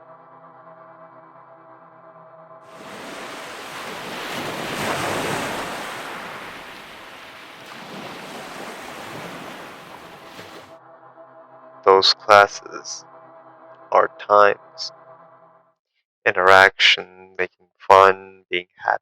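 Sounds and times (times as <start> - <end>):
faint ambient music drone: 0.0 - 3.8, 8.9 - 15.6
waves washing in: 2.7 - 10.8.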